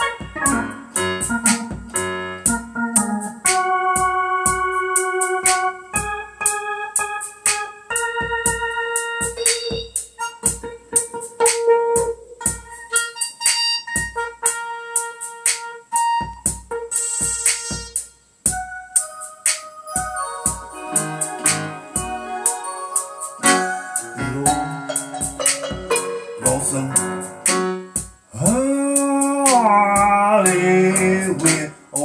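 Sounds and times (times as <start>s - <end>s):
steady drum beat: 0.0s - 6.6s, 7.2s - 14.6s, 16.2s - 18.7s, 20.0s - 32.0s
organ-like keyboard chords: 0.0s - 32.0s.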